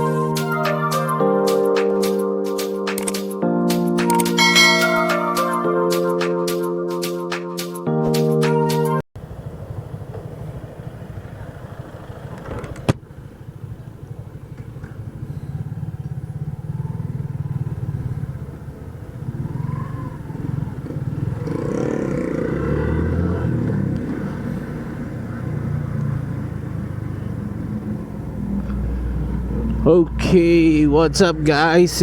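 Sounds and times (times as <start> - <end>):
sharp click: 2.9 - 3.3
motorcycle engine running: 9.2 - 32.0.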